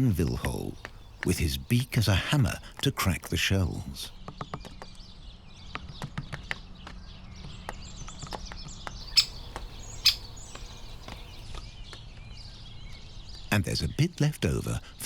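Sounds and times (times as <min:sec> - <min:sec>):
small birds chirping: 0:00.0 - 0:06.1, 0:06.7 - 0:15.0
woodpecker knocking on shell: 0:09.0 - 0:11.4.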